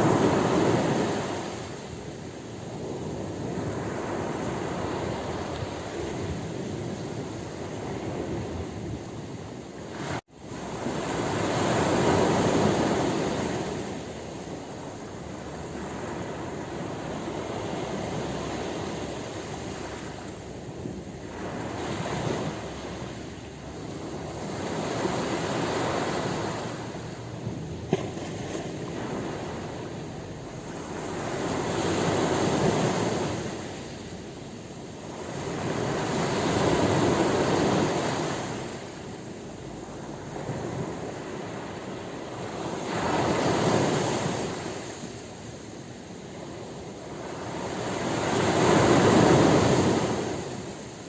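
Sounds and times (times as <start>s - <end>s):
ocean waves breaking on shore: 0.0s - 51.0s.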